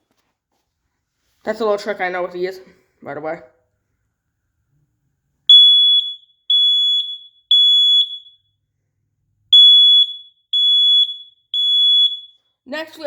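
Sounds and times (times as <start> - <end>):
smoke alarm beeping: 5.5 - 8.6, 9.5 - 12.6.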